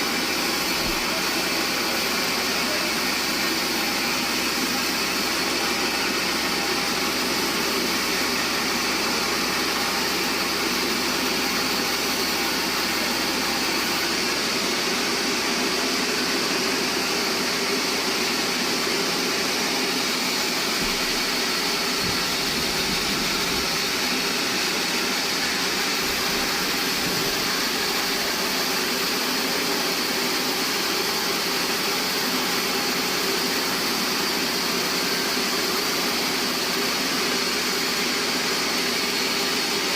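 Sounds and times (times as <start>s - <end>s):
band saw sawing log: 18.2s - 30.3s.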